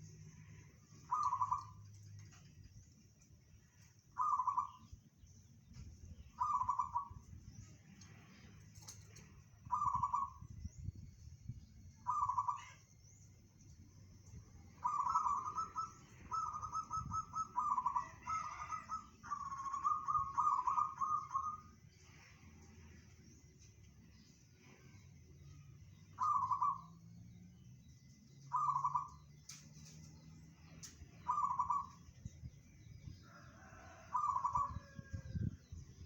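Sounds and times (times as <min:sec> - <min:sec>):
dove cooing: 0:01.0 - 0:02.3, 0:04.2 - 0:04.8, 0:09.7 - 0:10.4, 0:14.8 - 0:21.6, 0:26.2 - 0:26.8, 0:31.2 - 0:31.9.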